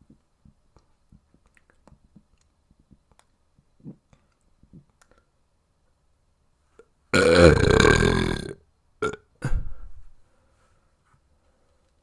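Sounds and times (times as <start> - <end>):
long low burp: 7.2 - 9.3.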